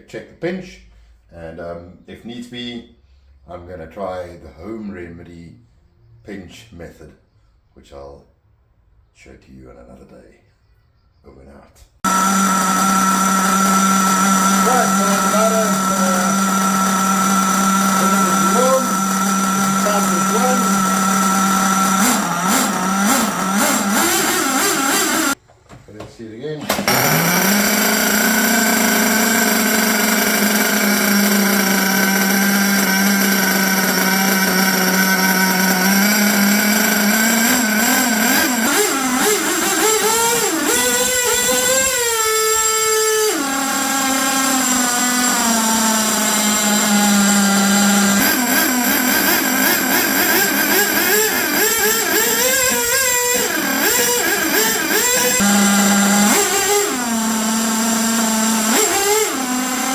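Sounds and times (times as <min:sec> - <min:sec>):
small engine idling and revving: 0:12.0 - 0:25.4, 0:26.7 - 0:59.9.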